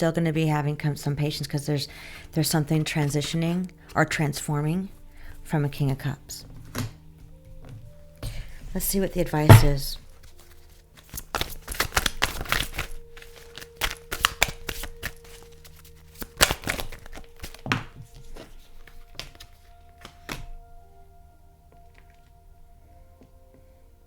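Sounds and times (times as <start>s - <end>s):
quiet background music: 0.0s - 24.0s
cards shuffled by hand: 10.2s - 20.5s.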